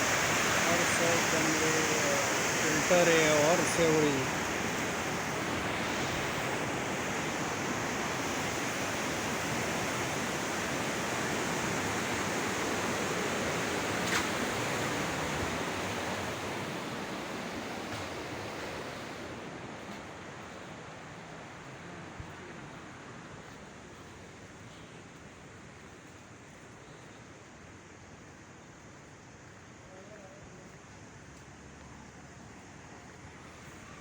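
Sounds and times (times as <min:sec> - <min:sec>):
river rushing: 0:00.0 - 0:23.3.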